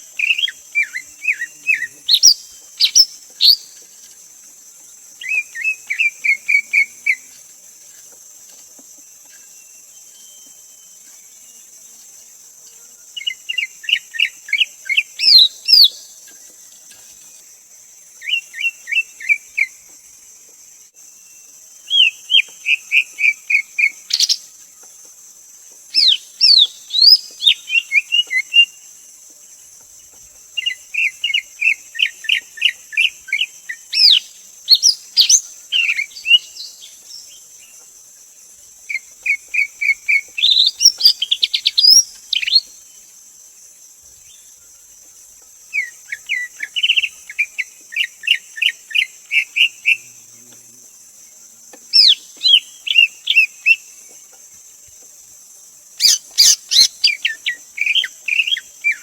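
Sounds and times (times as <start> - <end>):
bird singing whistled notes: 0.0 - 3.8, 5.2 - 7.3, 9.3 - 11.7, 13.2 - 16.1, 21.2 - 24.5, 25.9 - 28.8, 30.6 - 37.3, 38.9 - 42.9, 51.9 - 53.8, 56.0 - 59.0
steady high hiss: 0.0 - 59.0.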